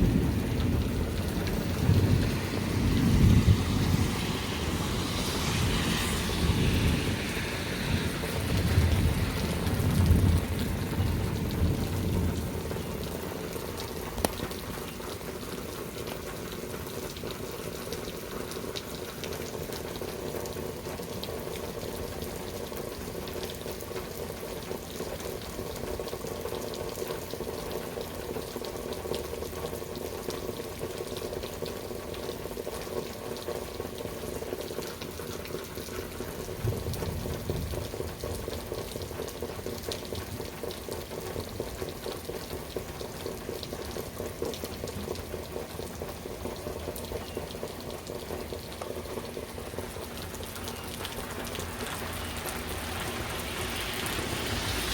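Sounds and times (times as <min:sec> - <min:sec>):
low thunder rumble: 0:00.0 - 0:05.7, 0:07.9 - 0:14.6, 0:36.6 - 0:38.7
steady rain pattering: 0:00.0 - 0:54.9.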